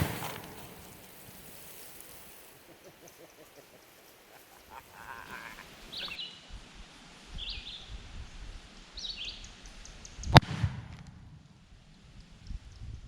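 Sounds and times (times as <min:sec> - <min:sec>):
faint background noise: 0:00.0 - 0:13.0
high-pitched animal calls: 0:02.6 - 0:06.2.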